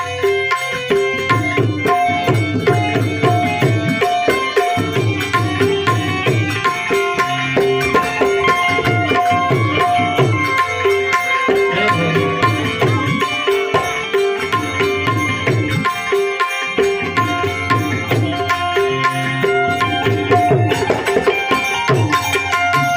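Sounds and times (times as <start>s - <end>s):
harmonium melody: 0.0s - 22.9s
tabla rhythm: 0.0s - 22.9s.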